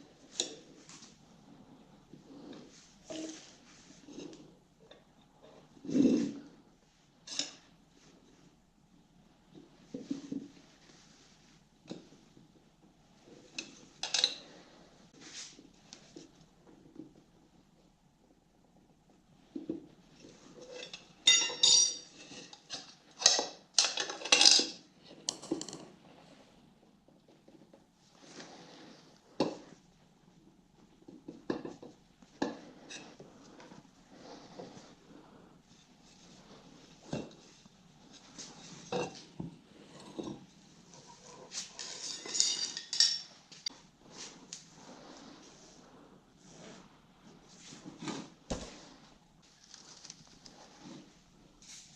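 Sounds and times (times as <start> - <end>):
metal tools clinking and scraping: 20.7 - 24.8, 41.5 - 43.4
metal tools clanking: 20.8 - 22.1, 41.8 - 43.3.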